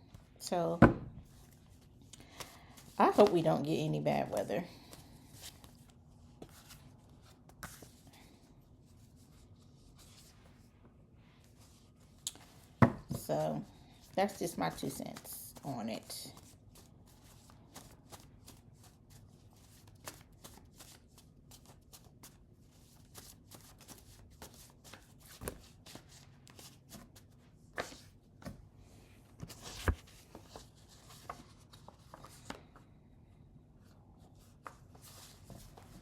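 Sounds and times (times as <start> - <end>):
cards being shuffled: 29.4 - 32.7.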